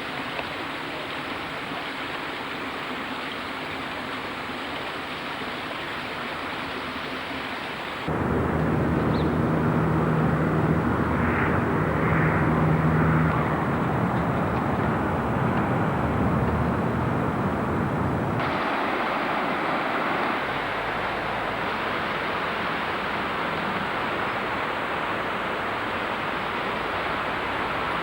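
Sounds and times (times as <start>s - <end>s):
engine drone: 8.0s - 28.0s
even rushing noise: 8.1s - 28.0s.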